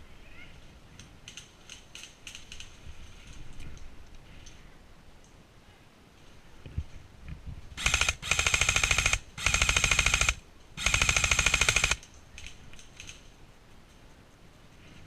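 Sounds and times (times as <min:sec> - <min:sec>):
airsoft rifle automatic fire: 0:07.8 - 0:12.0.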